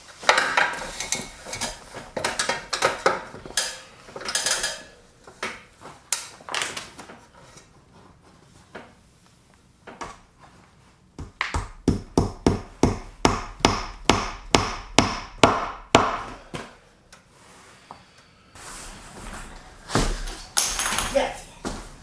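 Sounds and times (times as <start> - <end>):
hammer nailing into wood: 11.2 - 16.4.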